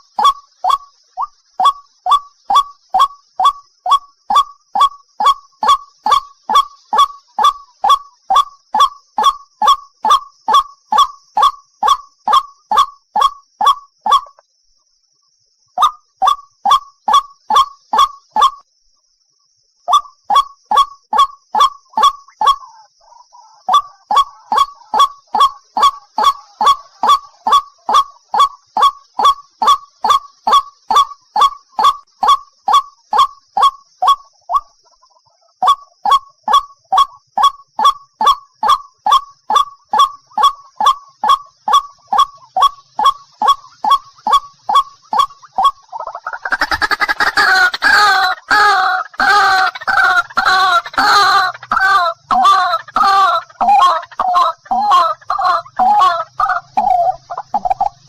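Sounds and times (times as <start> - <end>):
waterhen honking calls: 23.4 - 34.6, 35.6 - 58.0.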